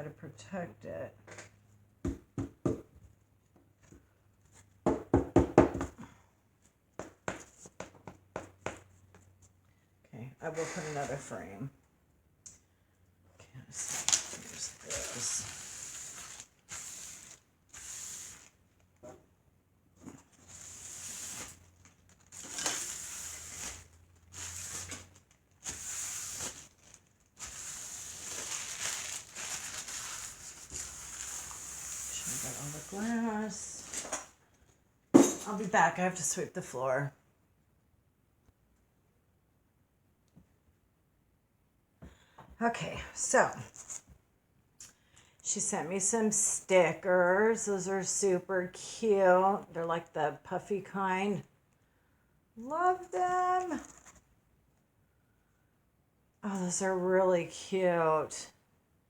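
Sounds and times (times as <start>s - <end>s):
packaging crinkling and rustling: 13.8s - 19.0s, 20.2s - 32.9s, 53.8s - 54.3s.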